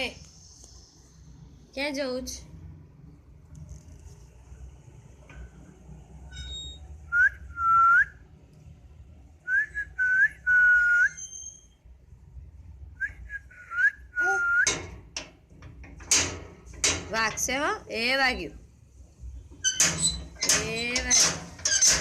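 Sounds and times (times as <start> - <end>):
door hinge squeaking: 6.2 - 7.0, 11.1 - 11.8, 19.6 - 22.0.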